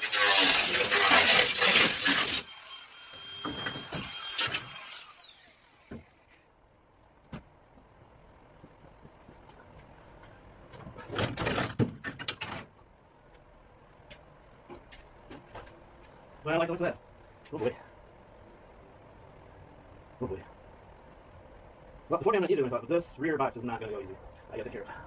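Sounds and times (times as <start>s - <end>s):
power tool cutting sheet metal: 0.0s - 6.4s
tool winding down whine: 0.0s - 6.5s.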